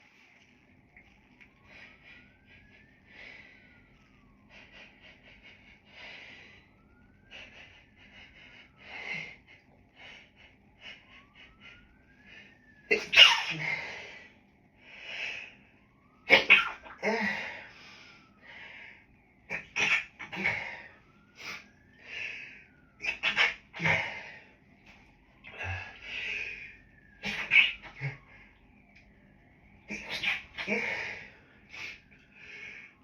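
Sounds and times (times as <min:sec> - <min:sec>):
faint wailing siren: 0:00.0 - 0:33.0
woman sneezing: 0:12.9 - 0:13.7.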